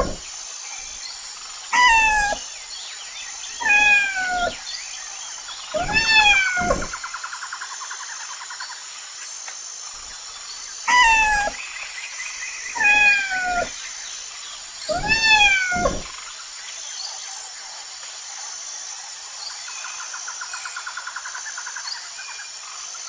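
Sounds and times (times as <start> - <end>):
cat meowing: 0.0 - 0.2, 1.8 - 2.4, 3.6 - 4.6, 5.8 - 7.0, 10.9 - 11.6, 12.8 - 13.8, 14.9 - 16.1
cat trilling: 0.0 - 0.2, 1.8 - 2.5, 3.6 - 4.6, 5.7 - 7.0, 10.9 - 11.6, 12.8 - 13.8, 14.9 - 16.1.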